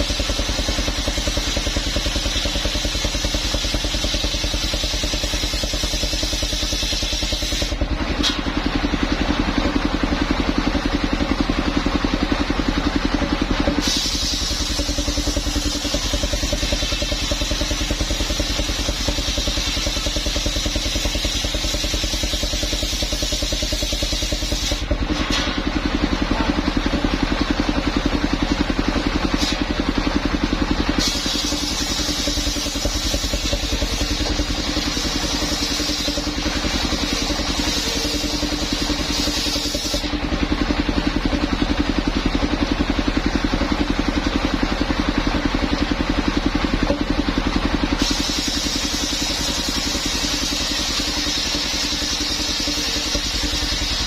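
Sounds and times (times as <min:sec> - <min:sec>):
circular saw engine running: 0:00.0 - 0:54.0
saw blade cutting wood: 0:31.0 - 0:40.1.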